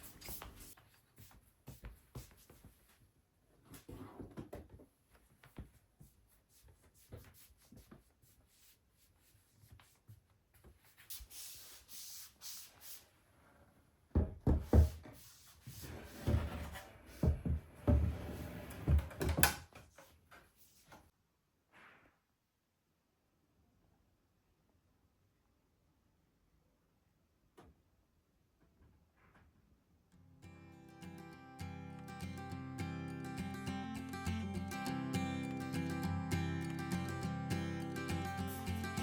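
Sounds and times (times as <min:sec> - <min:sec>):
rubbing and rustling: 0:00.0 - 0:13.3, 0:14.6 - 0:21.2.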